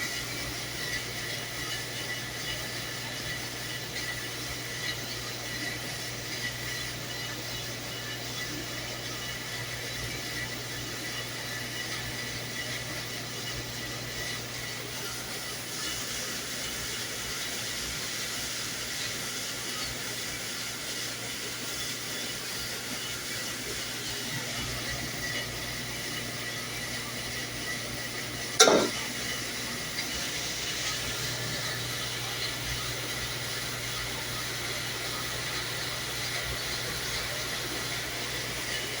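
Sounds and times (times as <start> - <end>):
dishwasher spraying water: 14.9 - 39.0
sharp clunk: 28.6 - 29.0.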